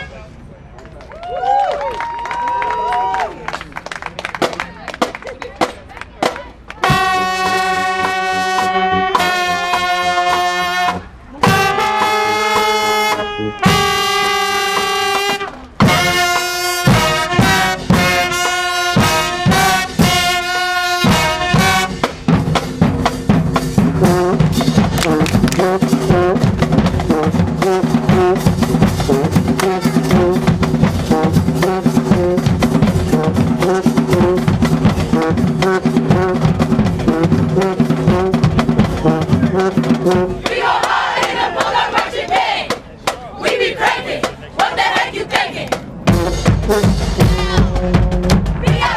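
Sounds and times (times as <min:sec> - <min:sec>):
marching band playing: 0:03.8 - 0:48.9
brass chords: 0:06.8 - 0:42.7, 0:43.5 - 0:48.9
fast drum rhythm: 0:21.0 - 0:40.4.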